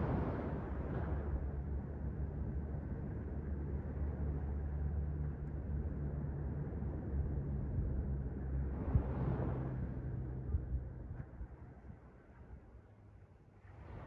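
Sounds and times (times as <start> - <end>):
sea surf rumbling: 0.0 - 1.2.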